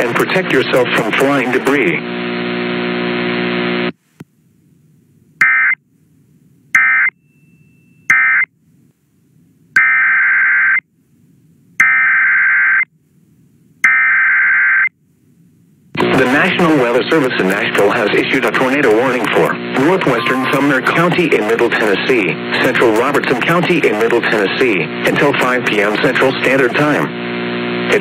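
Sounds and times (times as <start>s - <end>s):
steady buzzing tone: 0.4s - 25.6s
harsh electronic data bursts: 19.6s - 25.6s.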